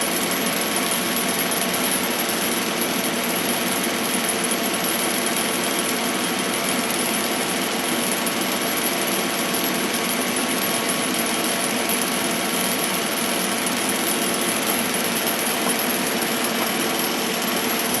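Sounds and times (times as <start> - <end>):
lathe running: 6.7 - 18.0.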